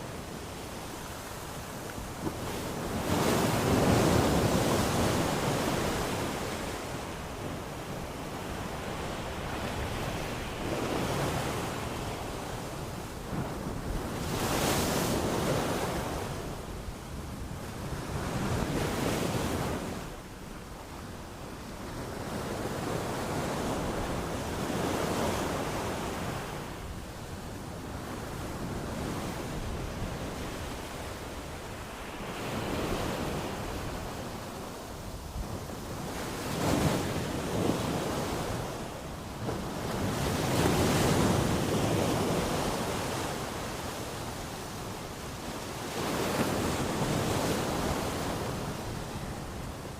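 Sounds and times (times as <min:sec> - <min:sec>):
ocean waves breaking on shore: 0:00.0 - 0:20.2, 0:20.9 - 0:49.9.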